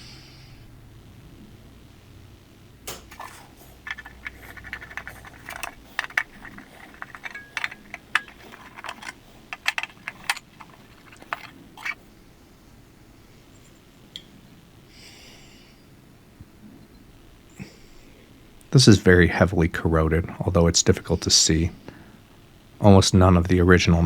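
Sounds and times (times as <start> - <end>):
small metal parts clinking: 3.1 - 12.0.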